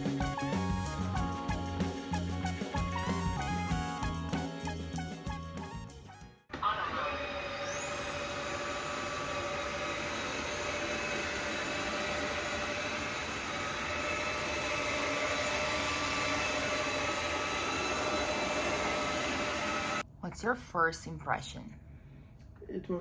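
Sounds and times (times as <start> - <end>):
background music: 0.0 - 6.5
vacuum mop motor whine: 6.5 - 20.0.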